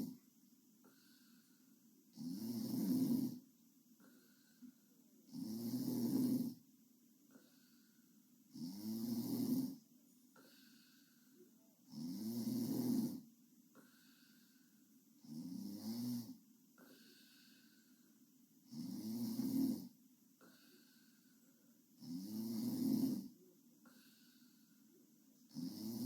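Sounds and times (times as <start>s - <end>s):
girl snoring loudly: 2.2s - 3.4s, 5.3s - 6.6s, 8.5s - 9.8s, 11.9s - 13.2s, 15.2s - 16.4s, 18.7s - 19.9s, 22.0s - 23.3s, 25.5s - 26.0s.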